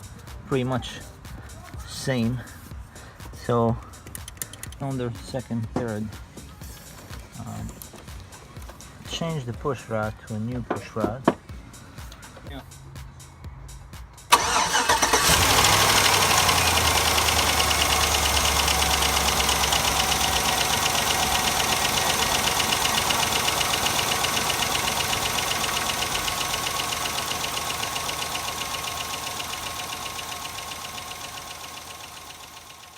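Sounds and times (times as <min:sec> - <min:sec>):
truck engine idling: 0:05.4 - 0:32.9
fast even engine ticking: 0:14.3 - 0:32.9.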